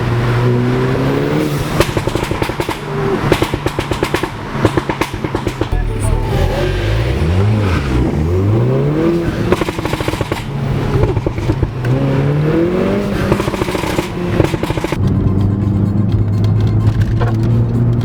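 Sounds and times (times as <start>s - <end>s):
car engine revving: 0.0s - 15.4s
exhaust pops crackling: 1.5s - 15.2s.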